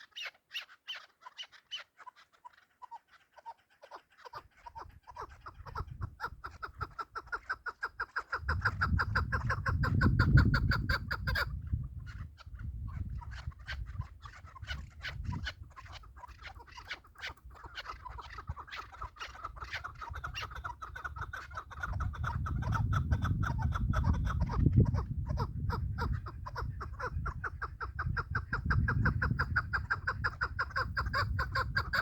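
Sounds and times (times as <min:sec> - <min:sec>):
partridge clucking call: 0:00.0 - 0:32.0.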